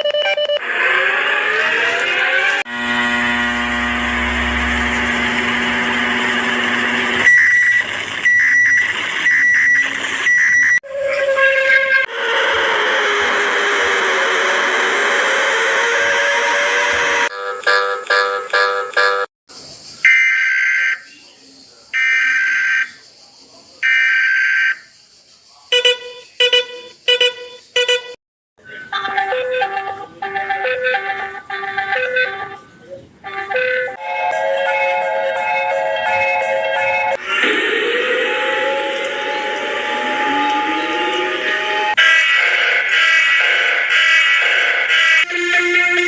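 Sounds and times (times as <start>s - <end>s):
steady buzzing alarm tone: 2.6s - 10.8s, 37.1s - 46.0s.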